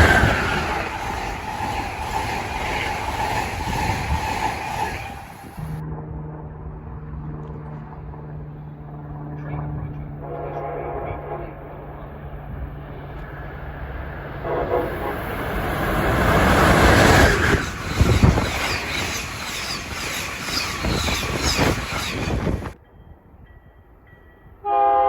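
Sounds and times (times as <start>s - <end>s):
wheels clattering over rail joints: 0.0s - 5.8s, 15.3s - 22.8s
passenger train passing: 0.0s - 6.0s, 9.7s - 25.0s.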